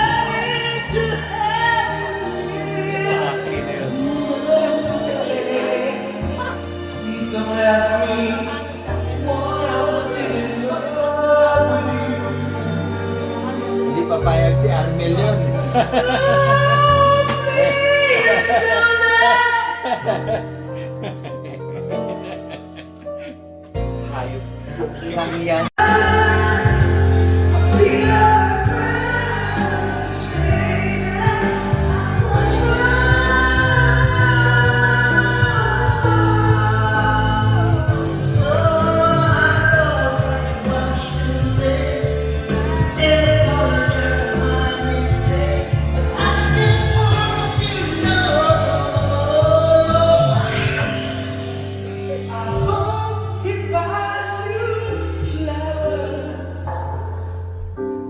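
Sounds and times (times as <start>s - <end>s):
love song with singing: 0.0s - 58.0s
steady bass notes: 23.8s - 58.0s.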